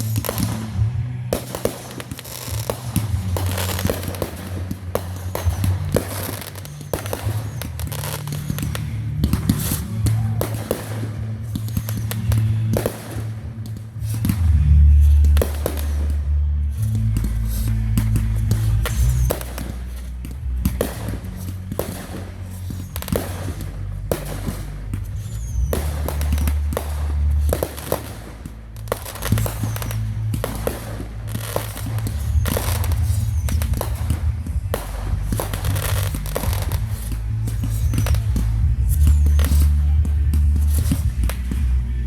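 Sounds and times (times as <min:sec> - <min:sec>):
fireworks bangs and crackles: 0:00.0 - 0:42.0
music with deep bass: 0:00.0 - 0:42.0.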